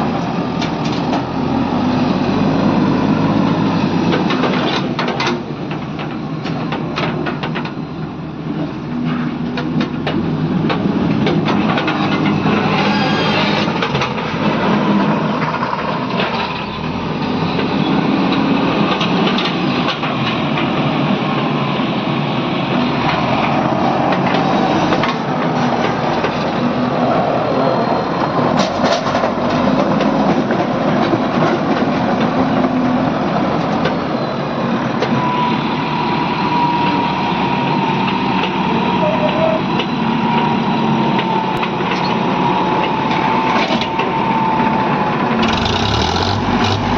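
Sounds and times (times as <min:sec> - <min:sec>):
diesel engine running: 0:45.3 - 0:46.9.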